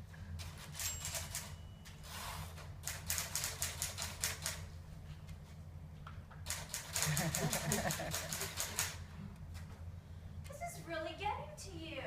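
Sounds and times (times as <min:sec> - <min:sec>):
typewriter keystrokes: 0:02.8 - 0:04.6, 0:06.5 - 0:09.0.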